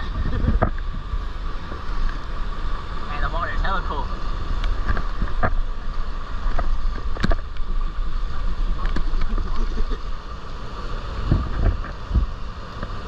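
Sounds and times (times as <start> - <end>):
waterfall rushing: 0.0 - 13.0
wind rumbling on microphone: 0.0 - 13.0.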